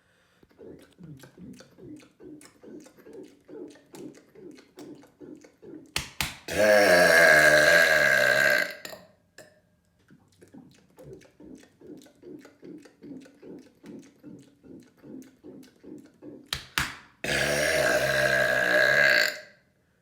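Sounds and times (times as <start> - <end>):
rhythmic throat sounds: 0.0 - 19.7
man burping: 6.5 - 9.0, 17.2 - 19.6.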